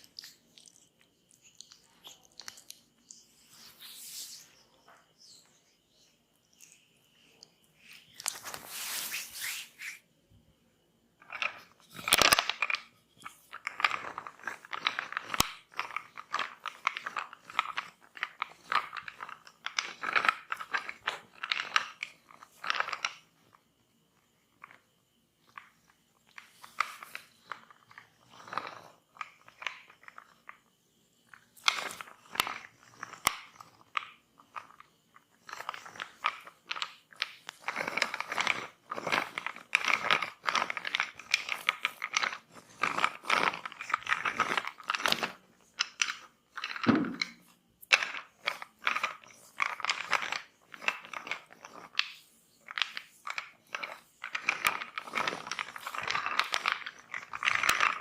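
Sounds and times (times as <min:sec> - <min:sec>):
hands rubbing oiled skin: 0:00.0 - 0:05.4, 0:08.2 - 0:10.0.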